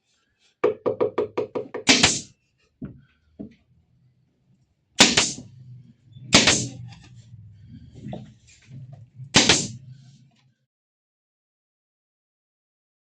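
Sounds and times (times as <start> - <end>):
sharp shots into wood: 1.9 - 2.3, 5.0 - 5.4, 6.3 - 6.8, 9.4 - 9.8.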